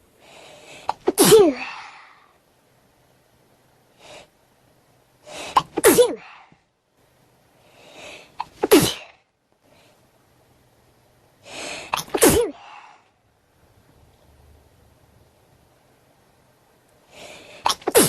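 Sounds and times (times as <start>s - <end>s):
person sneezing: 0.8s - 2.1s, 5.4s - 6.4s, 8.4s - 9.2s, 11.7s - 12.8s, 17.6s - 18.0s.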